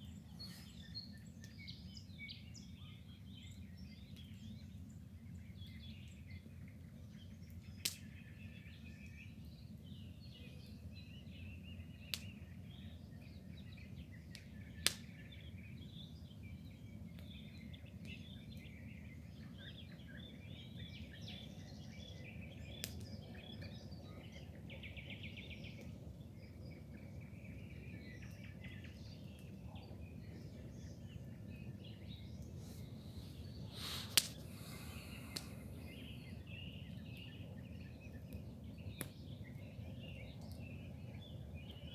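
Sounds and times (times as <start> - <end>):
small birds chirping and singing: 0.0 - 41.9
sharp clicks: 33.9 - 35.6.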